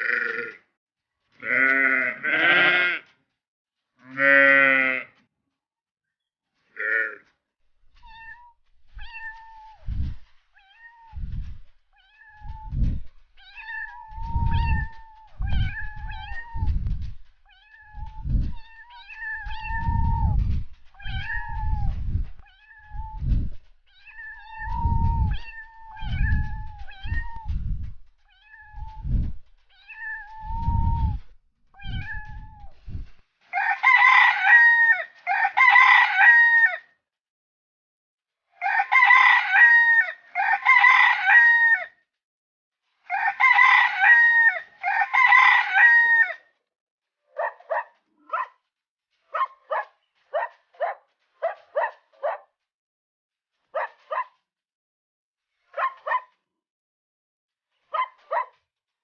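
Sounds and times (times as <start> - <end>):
cat meowing: 8.0 - 9.8, 10.6 - 29.2, 29.8 - 31.2, 31.8 - 32.8
chicken calling: 18.7 - 22.0.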